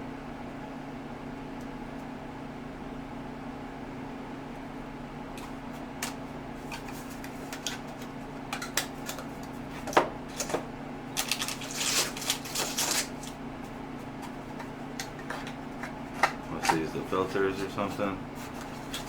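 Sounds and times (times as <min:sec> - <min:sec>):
steady low hum: 0:00.0 - 0:19.0
wrapping rustling: 0:11.1 - 0:13.7.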